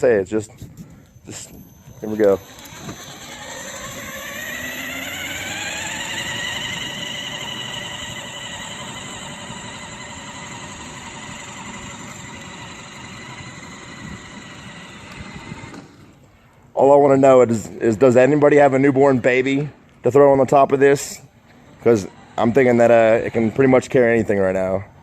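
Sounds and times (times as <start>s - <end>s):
electric motors whining: 0.8s - 16.3s, 21.4s - 23.7s.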